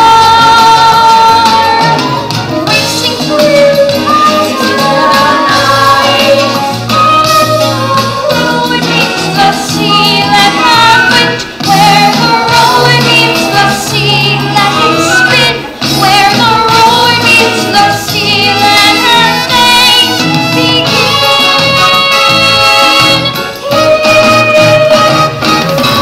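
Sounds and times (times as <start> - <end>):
children's choir singing: 0.0 - 2.1, 2.7 - 20.1
backing accompaniment: 0.0 - 26.0.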